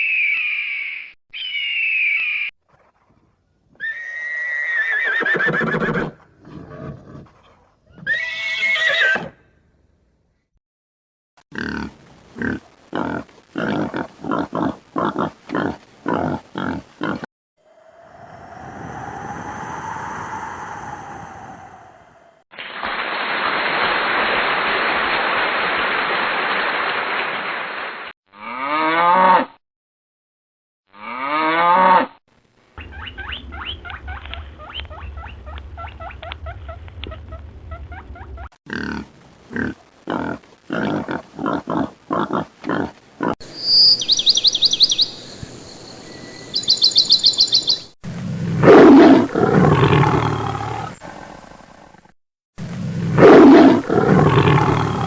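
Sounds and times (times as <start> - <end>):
long rough animal call: 17.6 - 22.4
low hum: 17.6 - 22.4
sharp calls and high trills: 43.5 - 48.0
big cat roaring: 48.3 - 52.0, 52.8 - 55.0.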